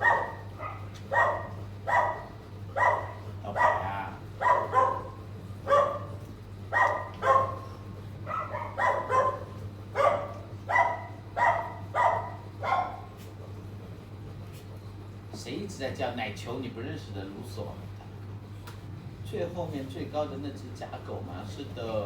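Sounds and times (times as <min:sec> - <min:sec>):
dog barking: 0:00.0 - 0:13.3.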